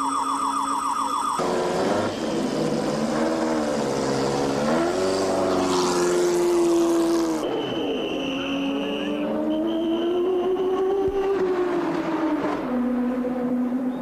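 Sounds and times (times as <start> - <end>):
racing car engine at high revs: 1.4 - 14.0.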